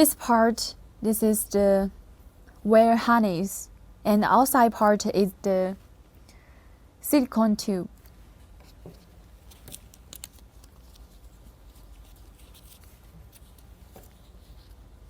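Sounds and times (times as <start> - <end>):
wire harness clicks and rustles: 8.0 - 14.3.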